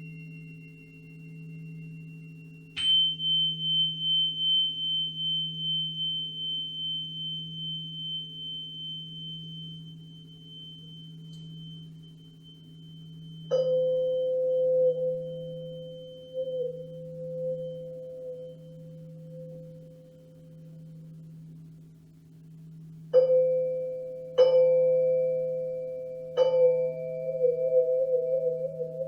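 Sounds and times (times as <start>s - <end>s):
metal instrument ringing: 0.0s - 14.3s
steady low hum: 0.0s - 29.0s.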